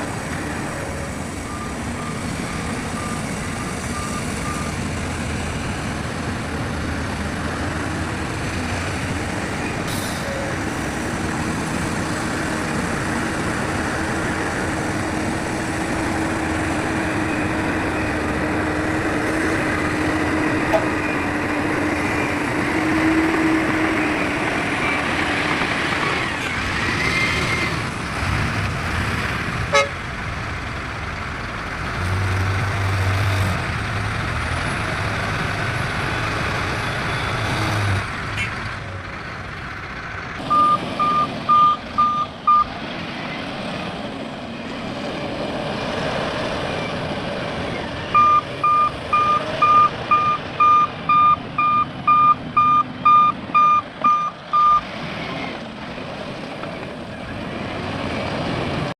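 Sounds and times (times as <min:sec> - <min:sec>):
heavy machinery engines running: 0:00.0 - 0:58.9
reversing alarm beeping: 0:40.5 - 0:42.7, 0:48.1 - 0:54.8.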